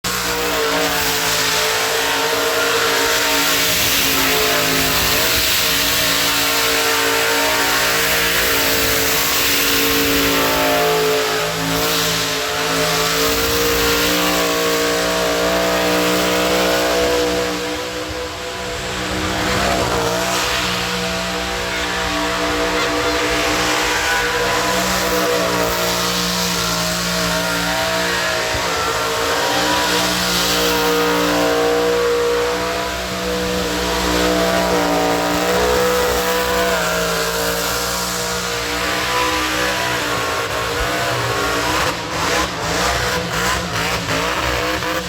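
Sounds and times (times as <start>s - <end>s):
car engine at high revs: 0.0s - 45.0s.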